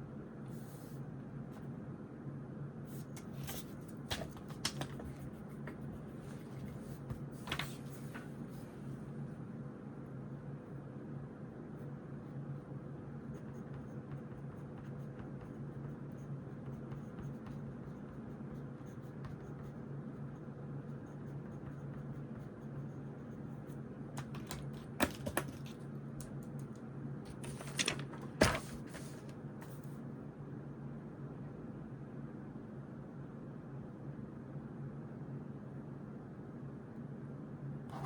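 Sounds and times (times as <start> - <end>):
steady low hum: 0.0 - 38.0
paper rustle: 3.1 - 8.4, 27.3 - 29.8
pen scratching on paper: 13.2 - 23.8.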